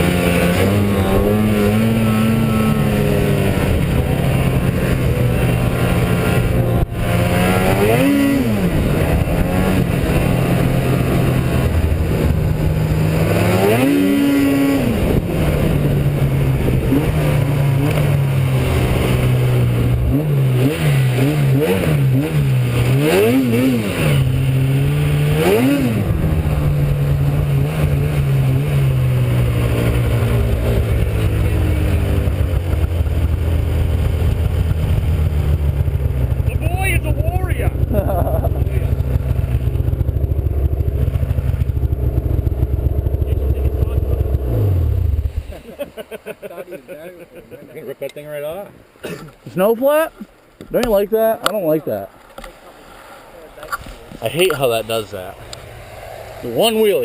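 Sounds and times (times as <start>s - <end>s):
snowmobile engine revving: 0.0s - 48.6s, 52.8s - 57.0s.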